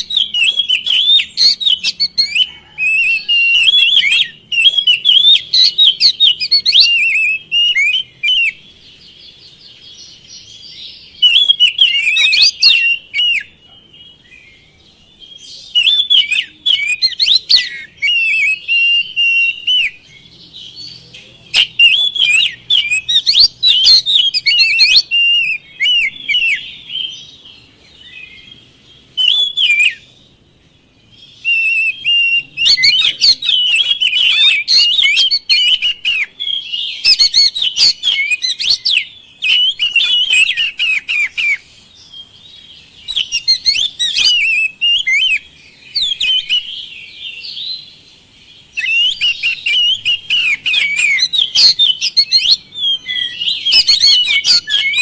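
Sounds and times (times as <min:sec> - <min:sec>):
bird singing whistled phrases: 0:00.0 - 0:30.2, 0:31.0 - 0:55.0.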